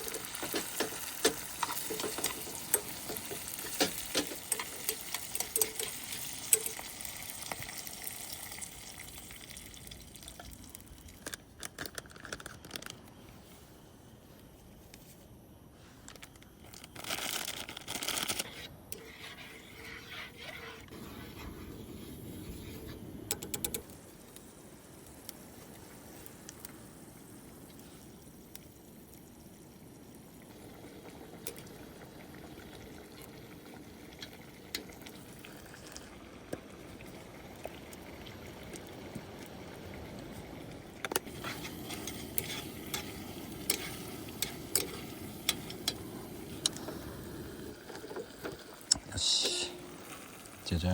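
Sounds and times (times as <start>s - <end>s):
pan sizzling: 0.0s - 11.1s, 30.4s - 50.9s
liquid pouring into pan: 0.0s - 11.2s.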